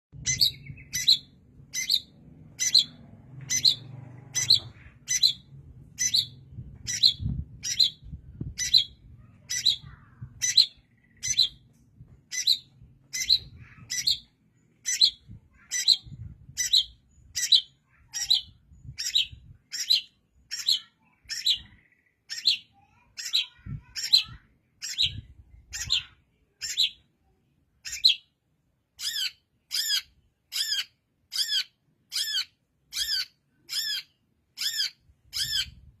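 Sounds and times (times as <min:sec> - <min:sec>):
bird harsh scratchy calls: 0:00.3 - 0:11.6, 0:29.0 - 0:35.8.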